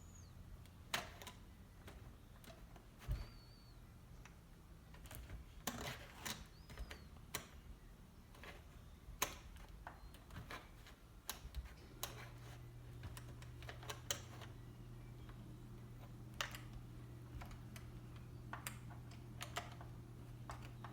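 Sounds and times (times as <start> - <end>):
low steady hum: 0.0 - 20.9
metal wire clicking and scraping: 4.2 - 7.6, 8.3 - 14.6.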